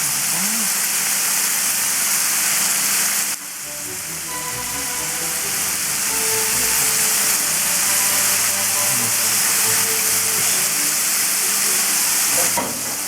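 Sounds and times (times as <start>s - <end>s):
food sizzling in a frying pan: 0.0s - 13.0s
light background music: 3.4s - 13.0s.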